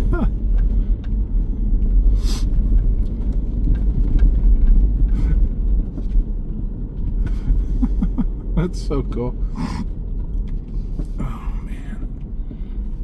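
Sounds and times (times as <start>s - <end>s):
tyres and engine rumbling: 0.0s - 13.0s.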